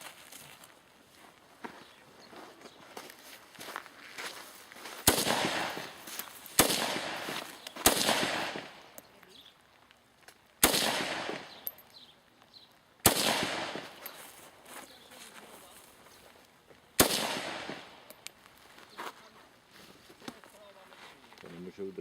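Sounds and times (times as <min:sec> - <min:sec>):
rifle shots with echo: 0:05.0 - 0:09.0, 0:10.6 - 0:11.8, 0:13.0 - 0:14.2, 0:17.0 - 0:18.2.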